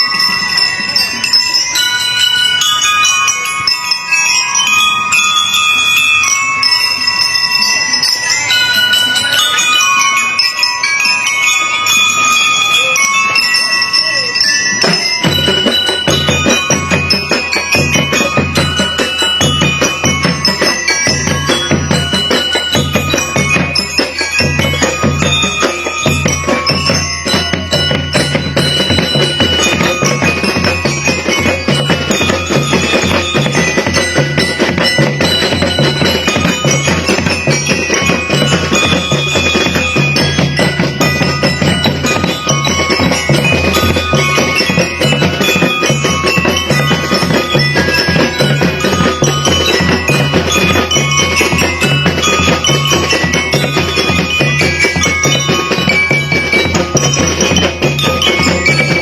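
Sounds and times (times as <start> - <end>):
bell lyres playing melody: 0.0 - 59.0
steady drum beat: 14.6 - 59.0.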